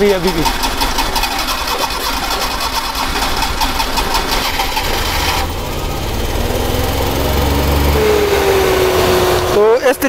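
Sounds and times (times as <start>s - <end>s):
small engine idling unevenly: 0.0s - 8.0s.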